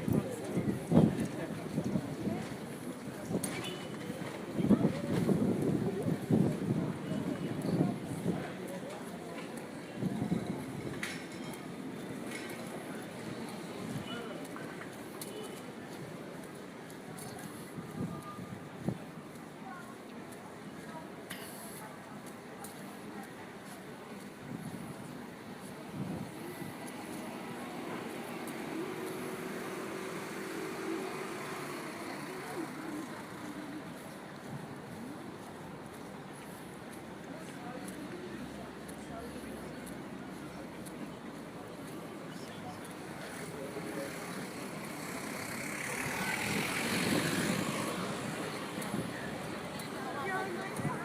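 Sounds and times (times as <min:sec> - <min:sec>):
city street ambience: 0:00.0 - 0:51.0
traffic noise: 0:00.0 - 0:51.0
vehicle passing by: 0:44.0 - 0:49.7.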